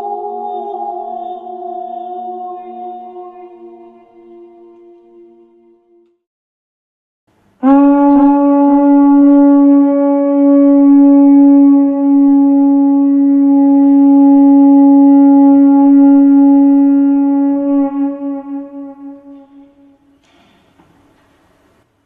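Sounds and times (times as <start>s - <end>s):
horn note: 7.6s - 20.3s.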